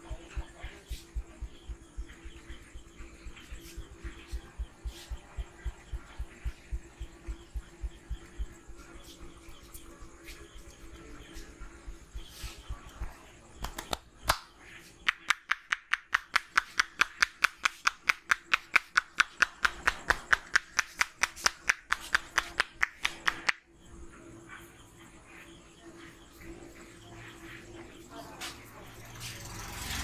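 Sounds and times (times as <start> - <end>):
hands slapping in massage: 0.1 - 8.5, 13.6 - 23.6.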